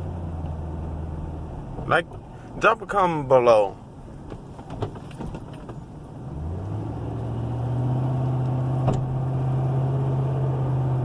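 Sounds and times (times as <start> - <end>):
suspension popping: 4.1 - 7.3
car engine pulling away: 4.7 - 11.0.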